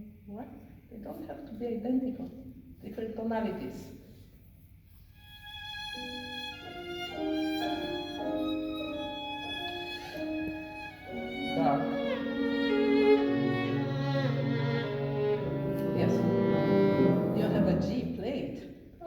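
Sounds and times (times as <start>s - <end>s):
violin playing slow melody: 5.2s - 17.9s
low instrument notes: 6.0s - 18.5s.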